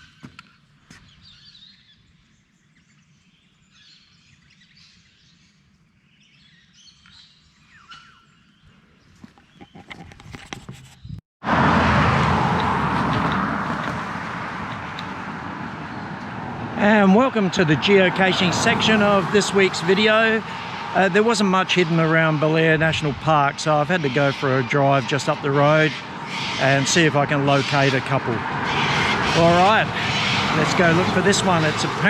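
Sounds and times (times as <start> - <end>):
birds chirping: 0.0 - 10.1, 12.4 - 32.0
loud steady rushing noise: 11.5 - 32.0.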